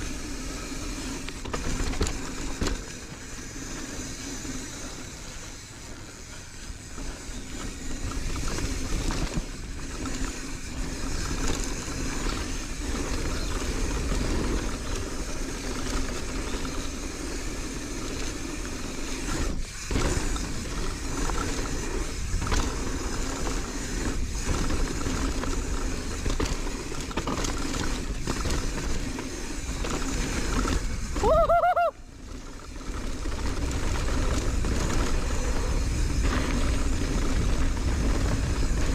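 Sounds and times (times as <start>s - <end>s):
wind rush on microphone: 33.1s - 38.9s.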